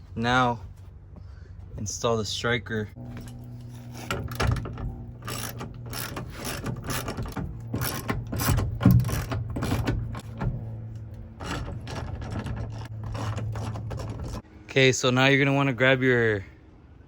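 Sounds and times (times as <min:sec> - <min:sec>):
ratchet wrench clicking: 0:05.2 - 0:09.9.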